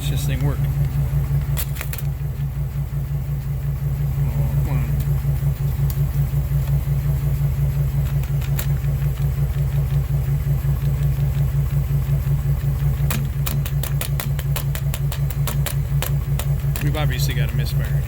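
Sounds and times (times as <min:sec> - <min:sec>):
engine idling rough: 0:00.0 - 0:18.0
rapid sharp ticks: 0:13.1 - 0:17.2.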